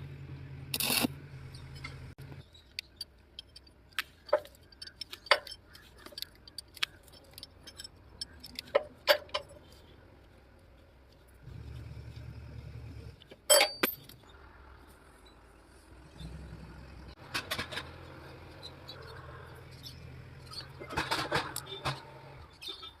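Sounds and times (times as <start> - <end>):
metal tools clinking on metal: 0.8 - 9.8, 13.4 - 14.3
low steady hum: 6.5 - 17.2.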